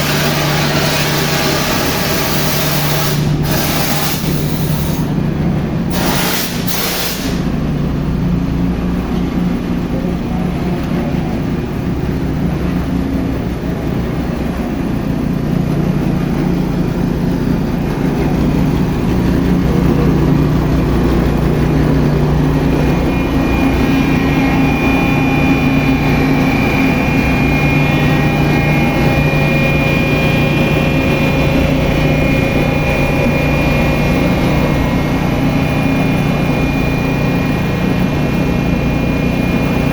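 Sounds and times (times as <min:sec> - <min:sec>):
concrete pump mechanical hum: 0:00.0 - 0:39.9
high-pitched whine: 0:00.0 - 0:39.9.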